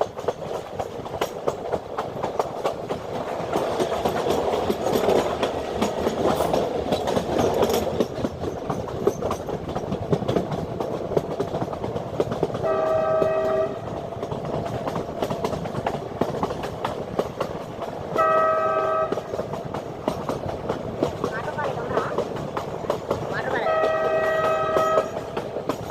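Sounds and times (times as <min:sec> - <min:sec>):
train rumbling on track: 0:00.0 - 0:25.9
train horn: 0:12.6 - 0:14.0, 0:18.1 - 0:19.3, 0:23.5 - 0:25.3.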